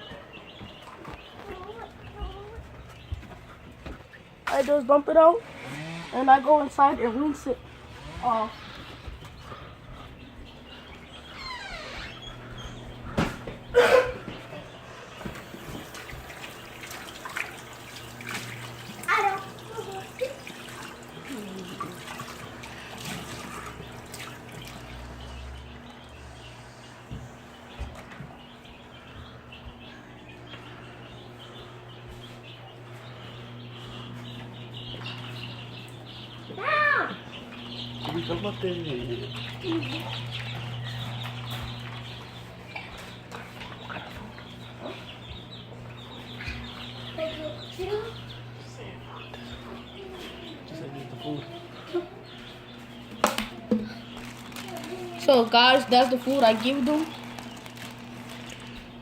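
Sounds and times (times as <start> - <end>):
chicks peeping: 0.0 - 59.0
constant low hum: 0.0 - 59.0
tap water running and trickling: 15.2 - 25.9, 53.1 - 59.0.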